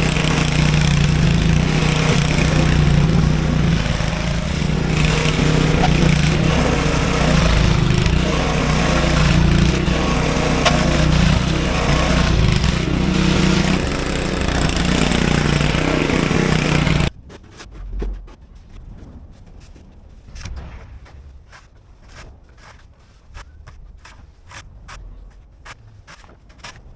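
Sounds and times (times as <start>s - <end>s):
snowblower engine running: 0.0s - 17.1s.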